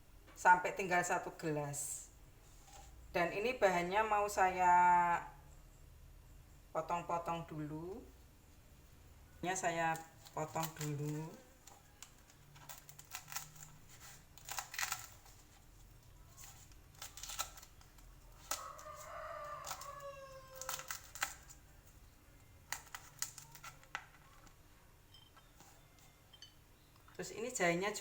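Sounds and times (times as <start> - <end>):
knife cutting leaves: 9.6 - 21.6
rooster crowing: 18.4 - 21.4.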